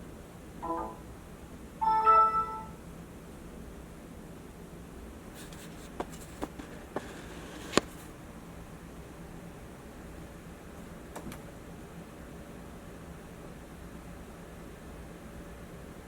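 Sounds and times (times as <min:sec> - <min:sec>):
electronic chime tone: 0:00.6 - 0:01.1, 0:01.8 - 0:02.8.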